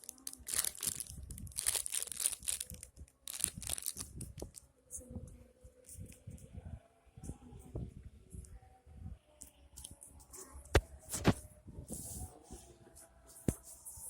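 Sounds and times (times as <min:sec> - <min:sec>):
plastic packaging crinkling: 0:00.0 - 0:04.6.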